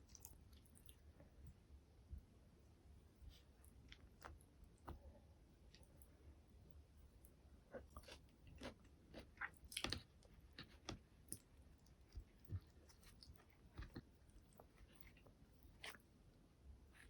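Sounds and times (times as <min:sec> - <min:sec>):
chewing food: 0:00.0 - 0:01.4, 0:06.7 - 0:16.2.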